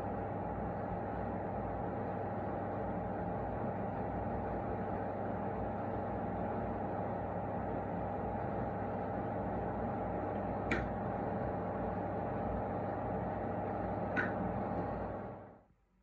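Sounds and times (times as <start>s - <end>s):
machine humming: 7.1s - 15.5s.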